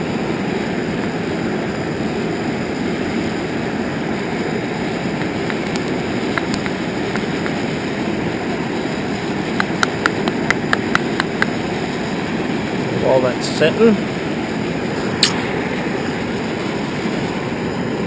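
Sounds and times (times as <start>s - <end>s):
blowtorch burners roaring: 0.0s - 18.0s.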